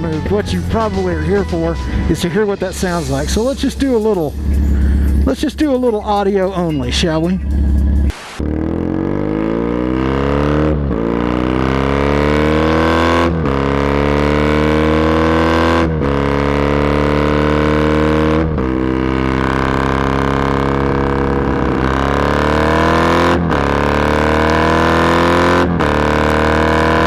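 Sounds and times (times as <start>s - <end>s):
motorcycle engine accelerating: 0.0s - 27.0s.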